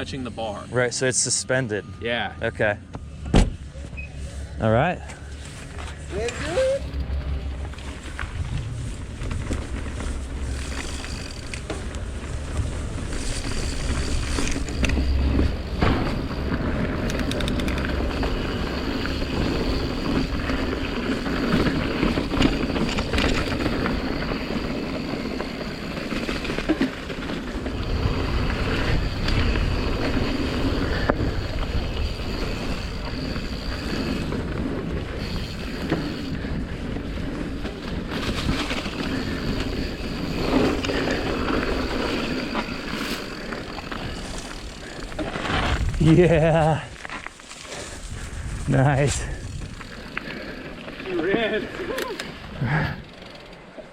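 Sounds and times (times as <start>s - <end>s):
tyres rolling over dirt: 5.2s - 53.9s
bike knocks and rattles: 5.6s - 36.5s
wind buffeting microphone: 6.4s - 24.6s, 44.0s - 47.0s, 47.8s - 50.2s.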